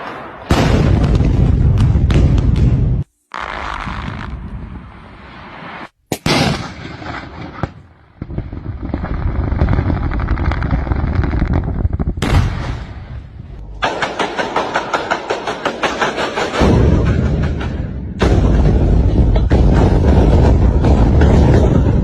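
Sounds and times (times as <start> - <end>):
deep boom: 8.2 - 14.1
low rumble: 8.3 - 14.0
blast bang: 11.4 - 14.7.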